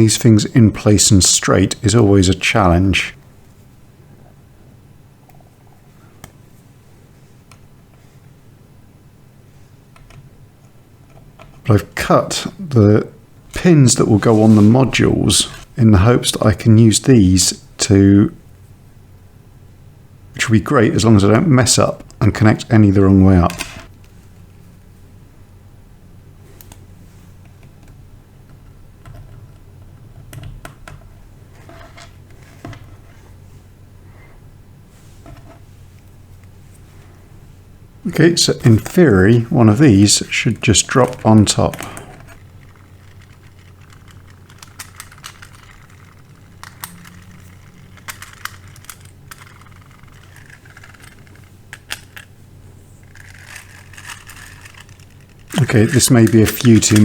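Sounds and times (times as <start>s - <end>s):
steady low hum: 0.0s - 57.0s
plastic parts clicking: 41.0s - 52.3s, 53.1s - 57.0s.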